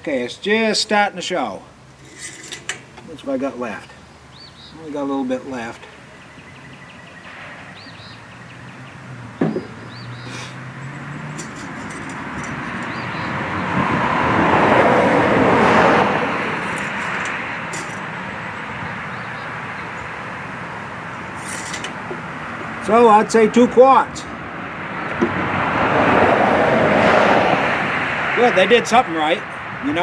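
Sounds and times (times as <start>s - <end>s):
passing vehicle road noise: 1.6s - 30.0s
short knock: 9.4s - 9.8s.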